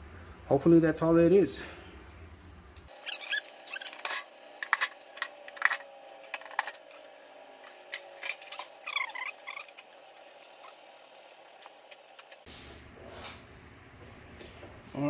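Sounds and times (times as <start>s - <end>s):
short squeaks: 2.9s - 4.2s, 8.3s - 9.9s.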